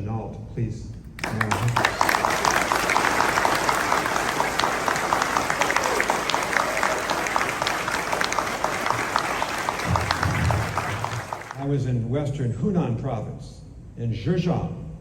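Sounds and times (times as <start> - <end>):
audience applauding: 1.2 - 11.7.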